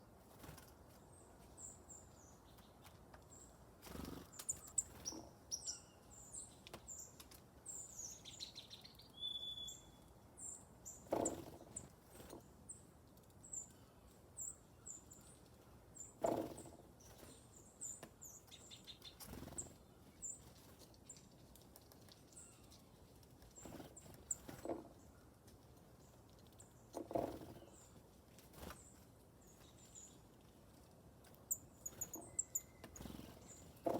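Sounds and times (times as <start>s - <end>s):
small songbirds chirping: 0.3s - 33.9s.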